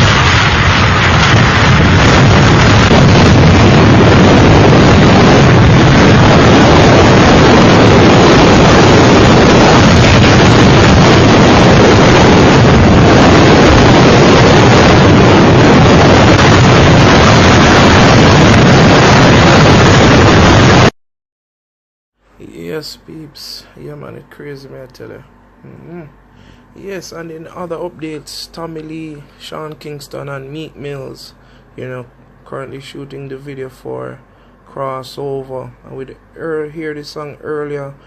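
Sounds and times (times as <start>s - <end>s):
storm wind on microphone: 0.0s - 20.9s.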